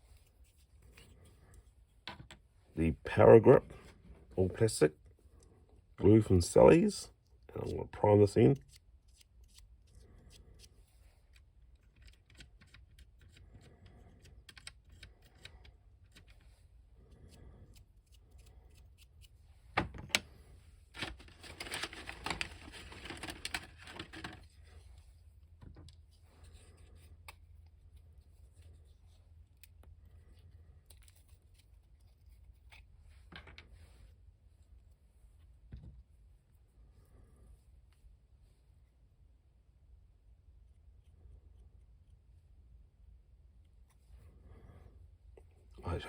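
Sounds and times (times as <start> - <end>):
plastic toy parts clicking and rustling: 11.2 - 16.5
scratching and rustling: 20.9 - 29.7.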